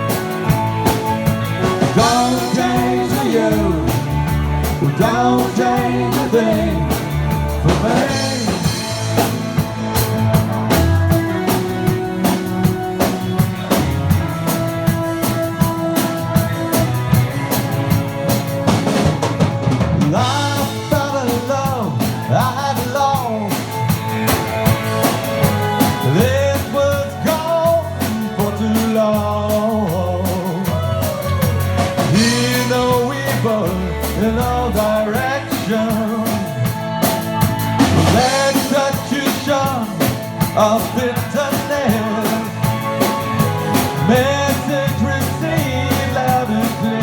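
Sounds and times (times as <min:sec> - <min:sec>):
drum rimshots: 0:00.0 - 0:47.0
pitch-bending lead melody: 0:00.0 - 0:47.0
rock band instrumental: 0:00.0 - 0:47.0.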